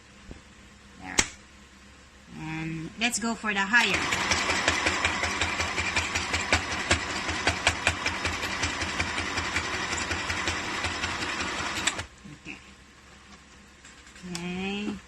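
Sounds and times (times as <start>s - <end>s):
sewing machine stitching rapidly: 3.8s - 12.1s.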